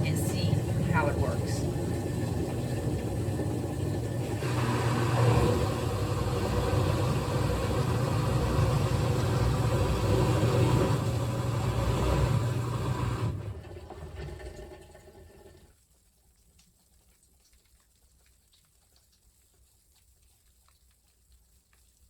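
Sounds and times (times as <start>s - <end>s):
washing machine motor hum: 0.0s - 15.7s.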